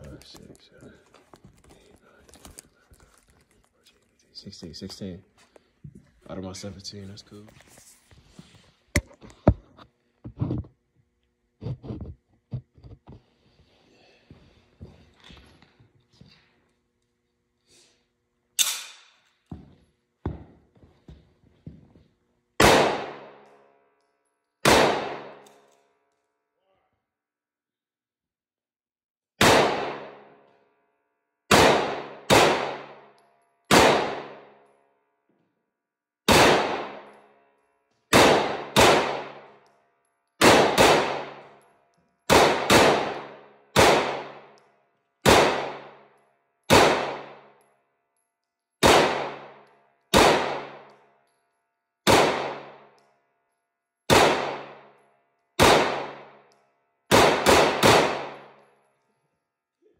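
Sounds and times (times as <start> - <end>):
pistol shots: 18.6 - 19.2, 22.6 - 23.4, 24.6 - 25.6, 29.4 - 30.4, 31.5 - 34.6, 36.3 - 37.3, 38.1 - 39.6, 40.4 - 41.6, 42.3 - 44.6, 45.2 - 46.1, 46.7 - 47.6, 48.8 - 50.9, 52.0 - 53.0, 54.1 - 55.0, 55.6 - 56.5, 57.1 - 58.6.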